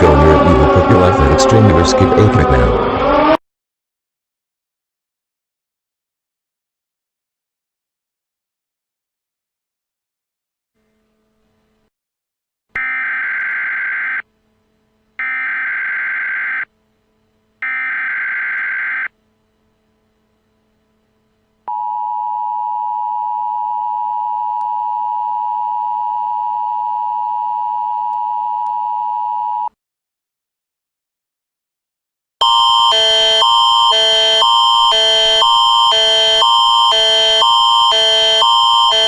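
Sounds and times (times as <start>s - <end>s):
two-tone attention signal: 32.4s - 39.0s.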